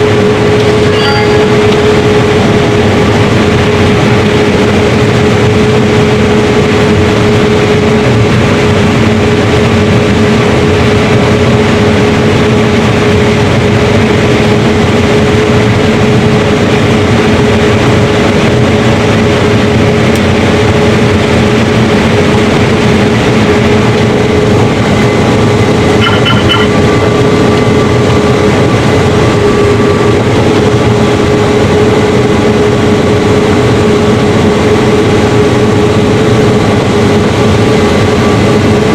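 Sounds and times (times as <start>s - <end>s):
combine harvester humming: 0.0s - 38.9s
electronic beeps: 0.8s - 1.8s, 26.0s - 26.8s.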